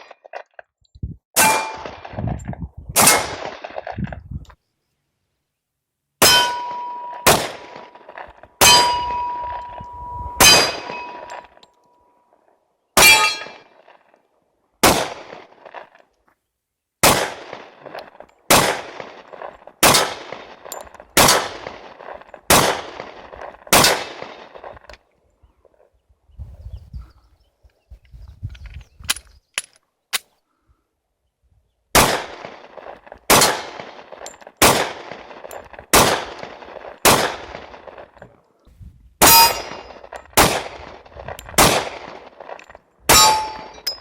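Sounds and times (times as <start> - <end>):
pistol shots: 3.0 - 3.8, 6.2 - 9.7, 10.4 - 11.5, 14.8 - 15.7, 17.0 - 24.7, 31.9 - 38.0, 39.2 - 41.0, 41.6 - 43.9
steady ringing note: 8.6 - 11.3.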